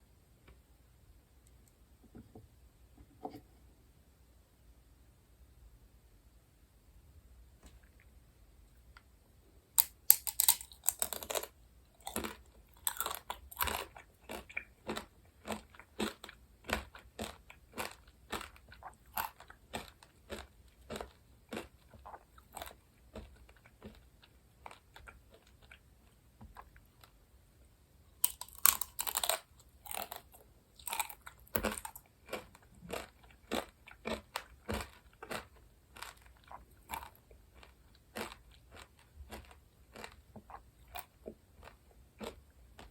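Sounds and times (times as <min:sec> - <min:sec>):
crunching bite: 0:09.8 - 0:24.0, 0:28.2 - 0:42.4
chewing: 0:09.8 - 0:25.8, 0:28.2 - 0:42.9.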